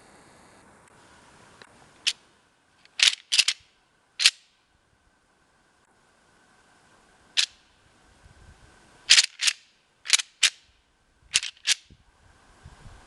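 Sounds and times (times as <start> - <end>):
antlers clacking together: 2.9 - 3.6, 9.1 - 10.7, 11.3 - 11.8.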